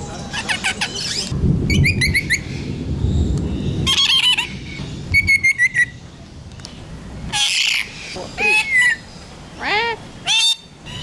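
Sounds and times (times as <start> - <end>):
birds chirping and whistling: 0.0 - 11.0
low rumble: 1.3 - 7.3
bird squawk: 3.8 - 6.0, 7.3 - 11.0.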